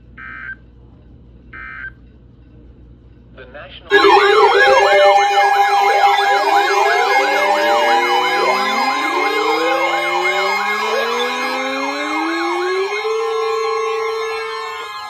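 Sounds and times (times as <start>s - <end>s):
electronic siren yelp: 3.9s - 15.0s
siren wails rising: 3.9s - 15.0s.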